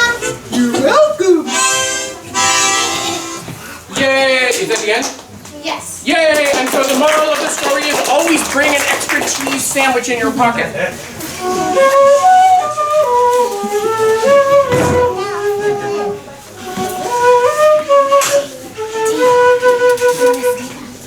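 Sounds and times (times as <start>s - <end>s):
flute-like woodwind tune: 0.0s - 3.5s, 11.2s - 21.0s
brief knock: 14.6s - 15.2s.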